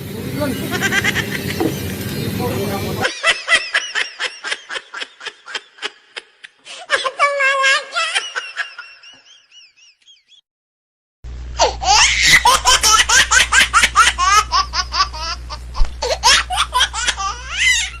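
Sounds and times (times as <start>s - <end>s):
loud high-pitched laughter: 0.6s - 1.8s, 3.0s - 10.3s, 11.6s - 18.0s
laughter: 0.7s - 1.8s, 3.0s - 10.4s, 12.0s - 15.4s
low steady hum: 11.3s - 18.0s.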